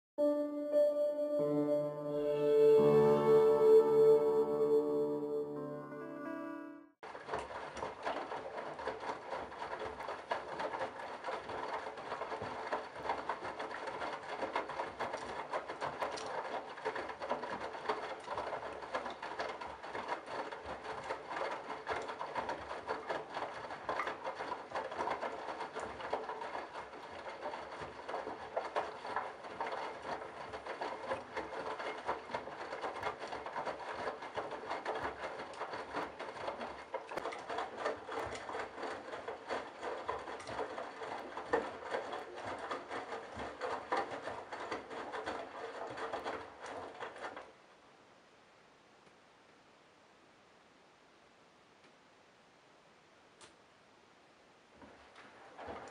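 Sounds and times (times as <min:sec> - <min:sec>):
laundry swishing in washer drum: 0:07.1 - 0:47.6, 0:54.8 - 0:55.9.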